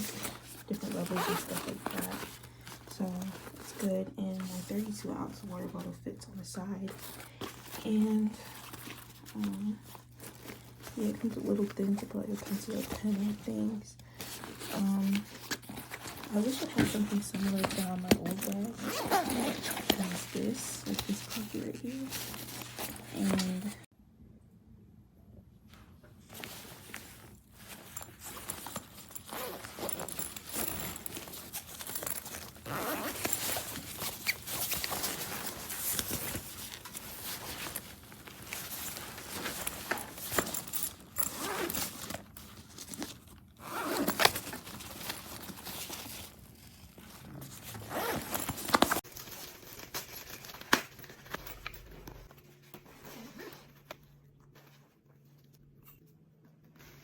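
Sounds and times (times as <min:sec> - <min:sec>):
backpack zippers: 0:00.0 - 0:03.6, 0:17.6 - 0:23.8, 0:27.9 - 0:45.6, 0:47.2 - 0:49.0
bag fabric rustling: 0:00.0 - 0:23.9, 0:26.2 - 0:55.3.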